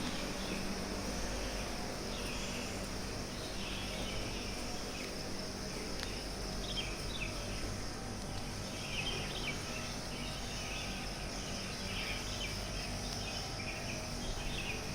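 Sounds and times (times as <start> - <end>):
high-pitched insect drone: 0.0 - 14.9
low steady hum: 0.0 - 14.9.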